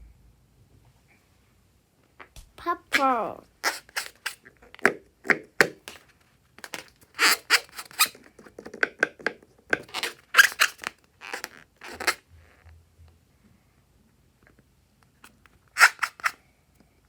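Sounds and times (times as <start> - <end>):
rubber balloon squeaking: 2.6 - 4.4, 6.6 - 8.3, 9.8 - 12.3, 15.8 - 16.4.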